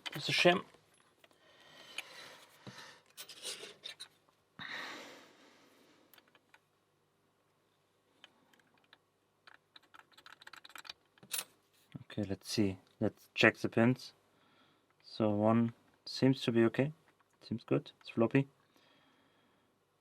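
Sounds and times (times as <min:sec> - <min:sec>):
lockpicking tools clicking in lock: 0:08.5 - 0:11.5.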